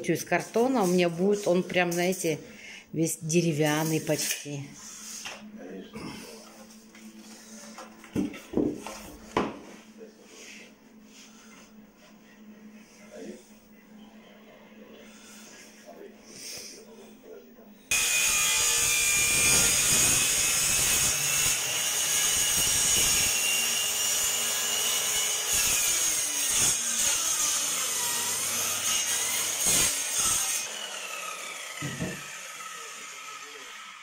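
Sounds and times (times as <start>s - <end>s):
power saw cutting wood: 17.9s - 34.0s.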